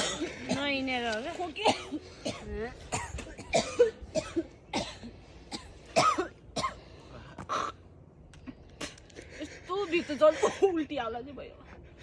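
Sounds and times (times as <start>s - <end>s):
person coughing: 1.6s - 6.8s.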